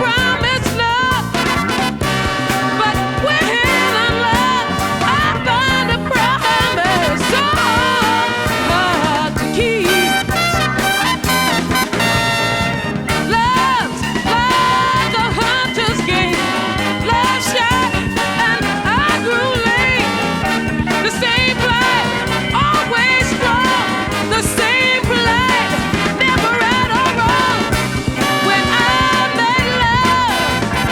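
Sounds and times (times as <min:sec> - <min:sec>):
swing ska music with vocals: 0:00.0 - 0:30.9.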